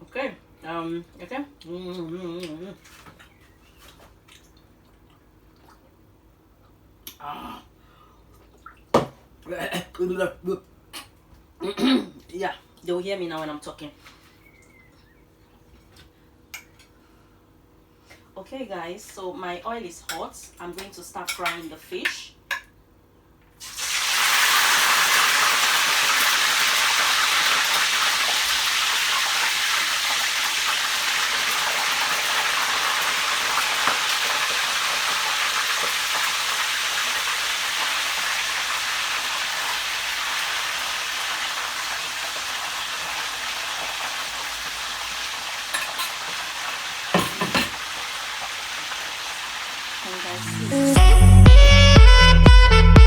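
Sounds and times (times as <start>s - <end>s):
fish sizzling in oil: 23.6s - 50.4s.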